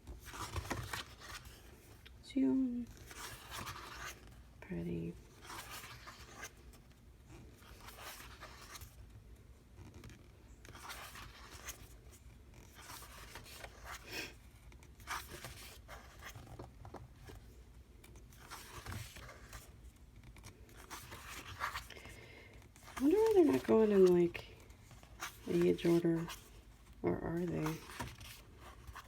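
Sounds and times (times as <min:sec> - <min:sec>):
book pages rustling: 0:00.0 - 0:02.2, 0:02.8 - 0:04.5, 0:05.2 - 0:29.0.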